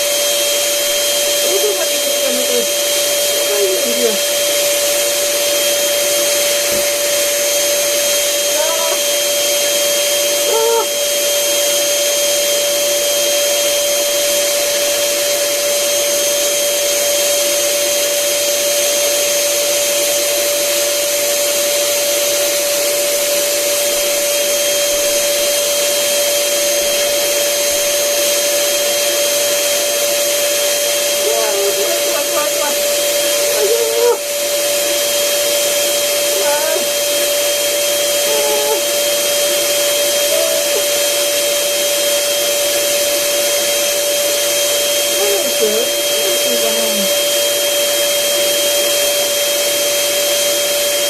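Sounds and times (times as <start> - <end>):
electric air blower whining: 0.0 - 51.0.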